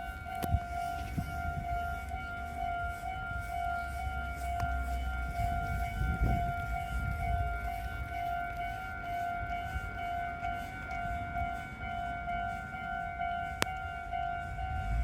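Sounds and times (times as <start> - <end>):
level-crossing warning bell: 0.0 - 15.0.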